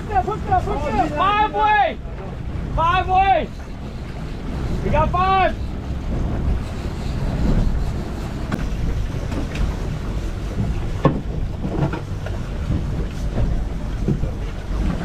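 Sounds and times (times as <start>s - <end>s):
boat engine rumble: 0.0s - 15.0s
wind buffeting microphone: 0.0s - 15.0s
short knocks: 8.5s - 9.7s.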